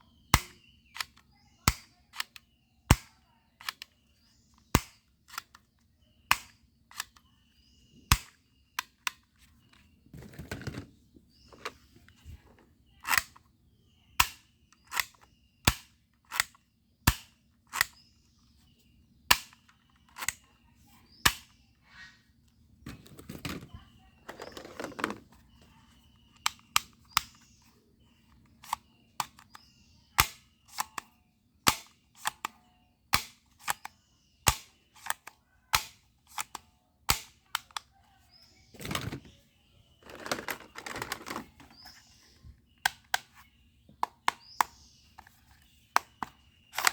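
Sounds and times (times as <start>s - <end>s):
toy gun snapping shots: 0.4s - 3.9s, 4.7s - 5.6s, 6.3s - 7.2s, 8.1s - 9.2s, 13.1s - 13.4s, 14.2s - 18.0s, 19.3s - 20.4s, 21.3s - 21.6s, 30.2s - 31.1s, 31.7s - 32.5s, 33.2s - 33.9s, 34.5s - 37.8s, 46.0s - 46.9s
plastic rattling and reloading: 9.0s - 13.4s, 22.9s - 25.7s, 38.7s - 42.0s, 46.0s - 46.9s.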